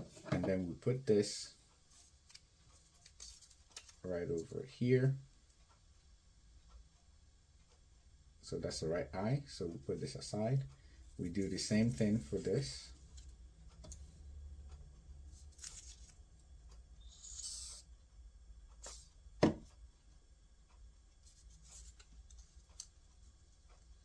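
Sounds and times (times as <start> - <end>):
paper rustling: 2.0 - 4.0, 15.5 - 16.2.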